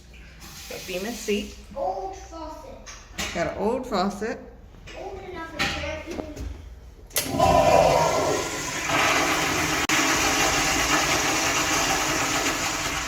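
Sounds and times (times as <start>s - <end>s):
toilet flushing: 7.2s - 13.0s.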